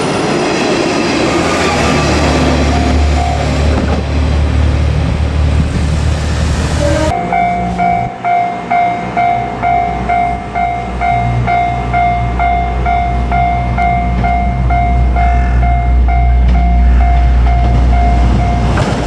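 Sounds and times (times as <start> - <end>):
train rumbling past: 0.0 - 19.0
level crossing warning bell: 7.1 - 19.0.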